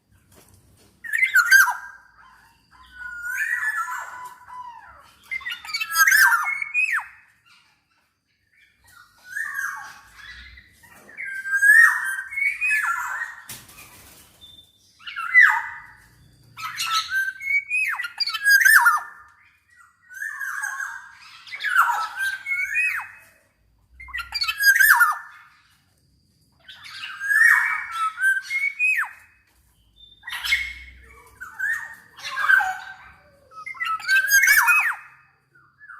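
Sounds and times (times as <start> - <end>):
bird singing fluty whistles: 1.0 - 7.2, 8.9 - 13.5, 14.4 - 23.4, 26.6 - 35.9.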